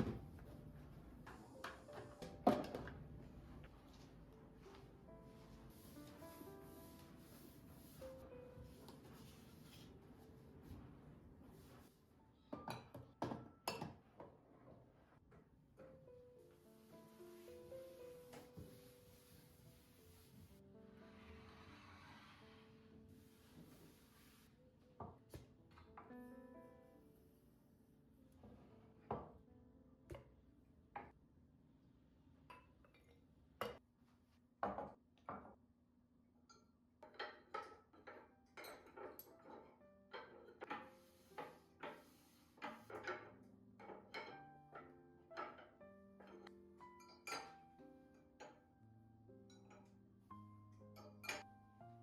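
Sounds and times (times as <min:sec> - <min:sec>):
kitchenware clinking: 0:12.5 - 0:14.4, 0:36.5 - 0:44.8, 0:45.4 - 0:47.6, 0:50.8 - 0:51.5.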